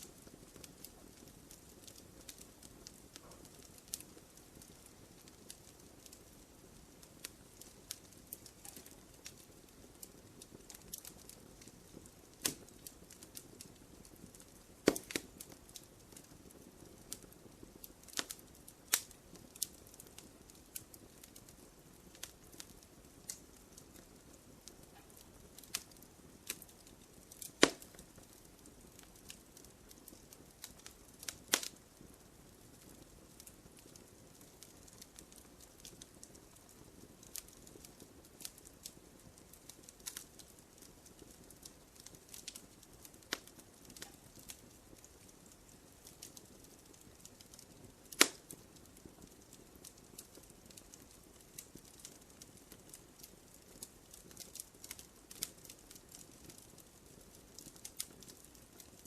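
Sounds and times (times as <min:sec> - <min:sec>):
wood fire crackling: 0:00.0 - 0:59.0.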